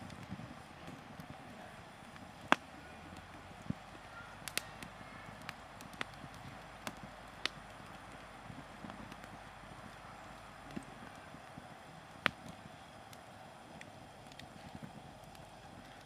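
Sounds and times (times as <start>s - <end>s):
fire crackling and popping: 0.0s - 16.0s
fire hissing: 0.0s - 16.0s.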